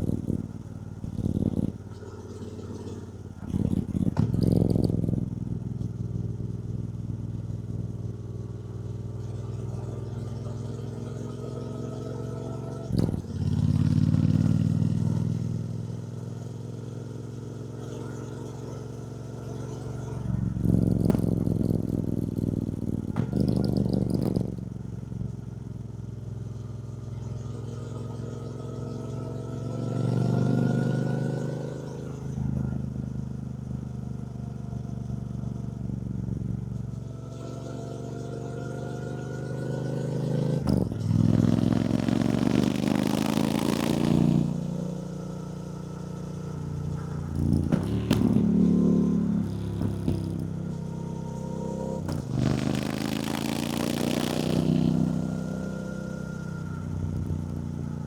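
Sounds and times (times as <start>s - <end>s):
motorcycle engine accelerating: 0.0s - 58.0s.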